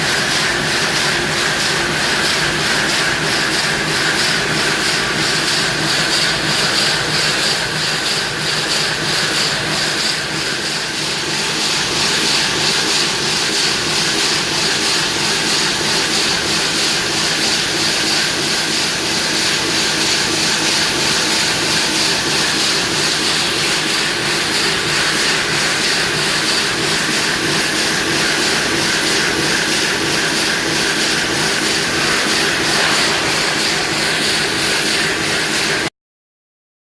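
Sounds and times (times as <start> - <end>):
stone saw cutting: 14.6 - 35.8.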